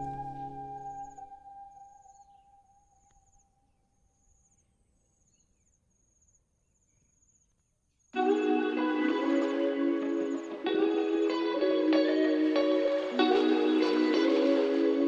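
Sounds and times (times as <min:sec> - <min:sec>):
music: 0:00.0 - 0:01.9, 0:08.2 - 0:15.0.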